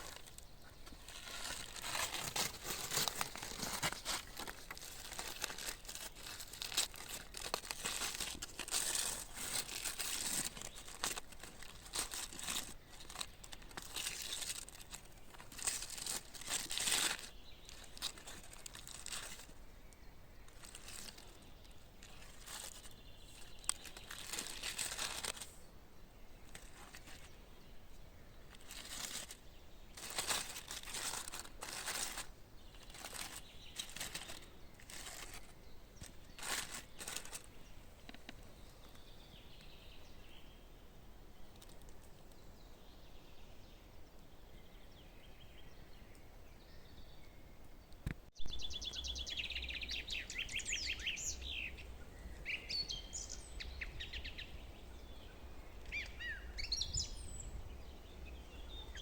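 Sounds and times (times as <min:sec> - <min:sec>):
rustling crunching strokes: 0:00.0 - 0:25.7, 0:26.3 - 0:39.8
songbirds singing: 0:00.0 - 0:59.0.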